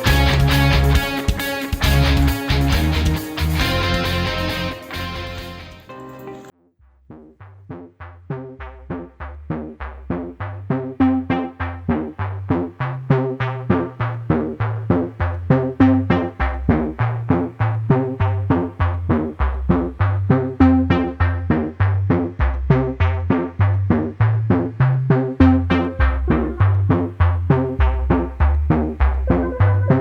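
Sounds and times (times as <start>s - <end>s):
short struck notes over bass line: 29.2s - 30.0s.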